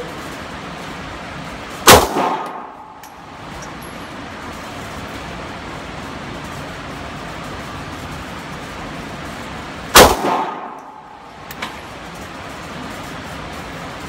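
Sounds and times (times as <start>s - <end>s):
steady background noise: 0.0s - 14.0s
pistol shot: 1.8s - 3.0s, 9.9s - 11.2s.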